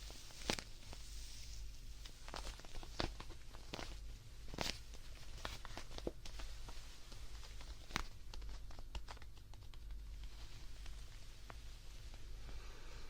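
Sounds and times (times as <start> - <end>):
fabric rustling and scratching: 0.0 - 12.5
small clicks and taps: 2.3 - 11.6.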